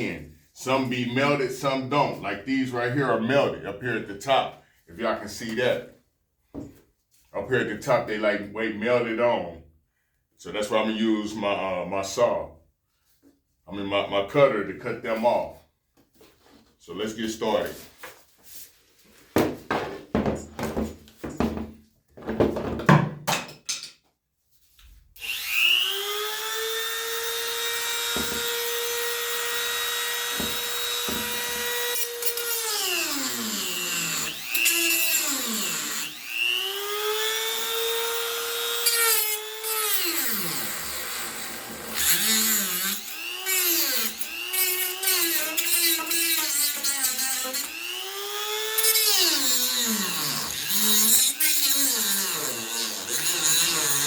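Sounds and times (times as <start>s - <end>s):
rotary tool whining cutting plastic: 25.2s - 54.0s.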